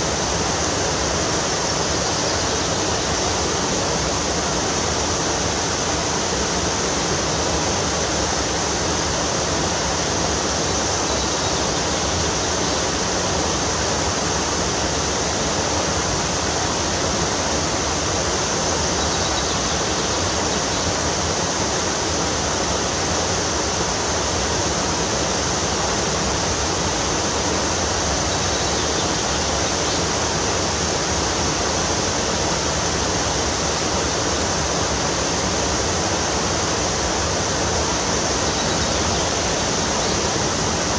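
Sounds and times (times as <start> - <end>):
rushing river water: 0.0 - 40.9.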